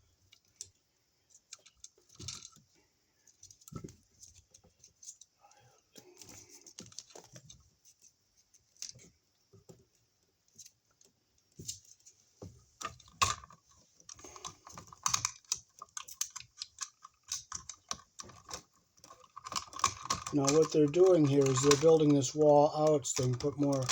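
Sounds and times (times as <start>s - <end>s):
hand tools clicking and scraping: 13.2s - 23.9s.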